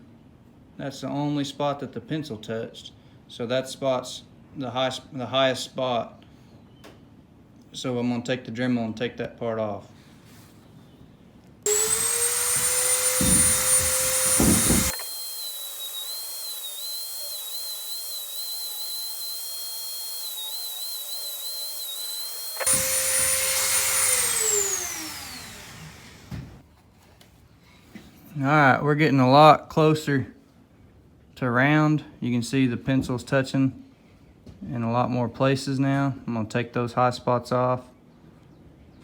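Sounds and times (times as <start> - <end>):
rotary tool grinding: 11.7 - 26.6.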